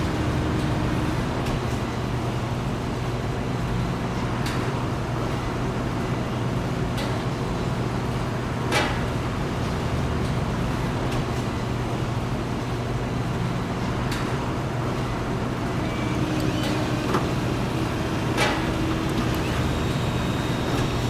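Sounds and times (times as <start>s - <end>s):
factory machinery running: 0.0s - 2.3s, 14.1s - 21.0s.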